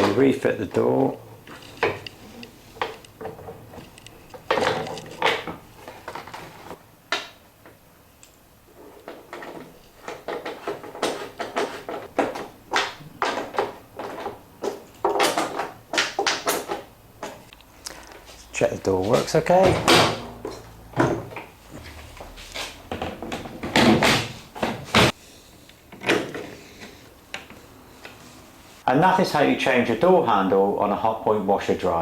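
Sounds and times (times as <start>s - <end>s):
appliance door clicks and knocks: 19.6s - 20.3s.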